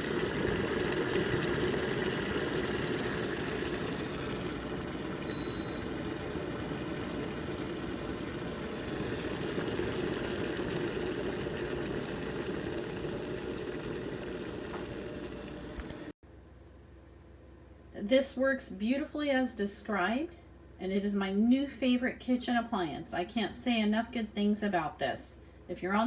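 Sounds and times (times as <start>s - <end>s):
electric kettle heating water: 0.0s - 16.2s.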